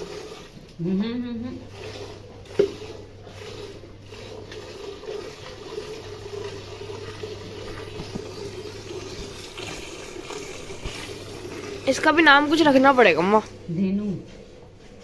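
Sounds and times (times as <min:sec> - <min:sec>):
milk squirting into a pail: 0:01.7 - 0:13.2.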